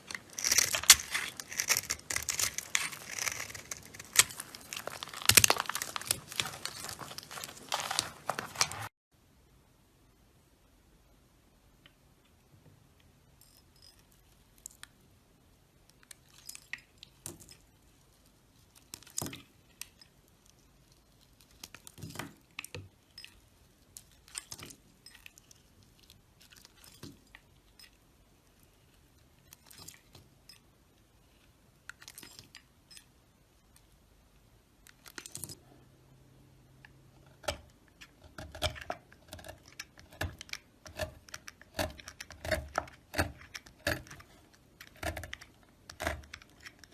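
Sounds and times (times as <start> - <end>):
blade carving dry soap: 0.0 - 8.9, 37.2 - 46.9.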